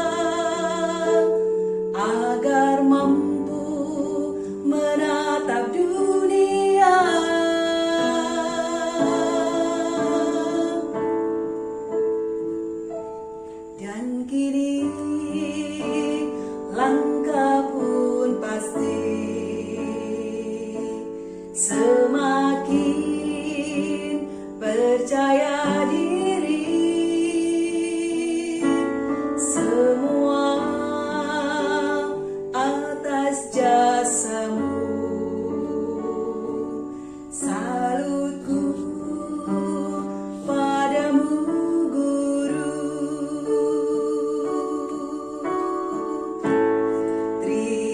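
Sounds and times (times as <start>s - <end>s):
female choir singing: 0.0s - 1.4s, 37.4s - 46.6s.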